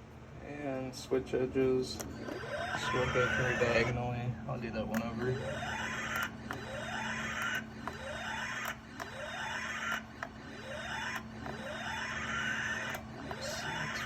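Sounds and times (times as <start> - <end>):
sharp clicks: 1.9 - 2.8, 4.9 - 14.0
rising electronic sweep tone: 5.3 - 14.0.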